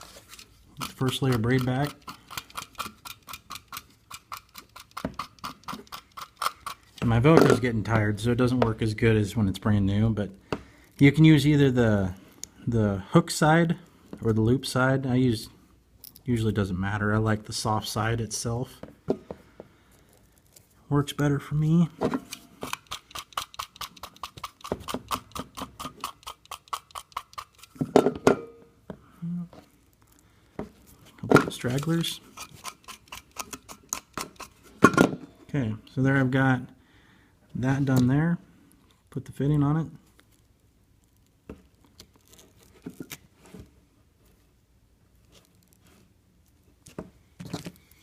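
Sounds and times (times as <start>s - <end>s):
velcro brushing wire braid: 22.3s - 27.8s, 40.2s - 43.2s.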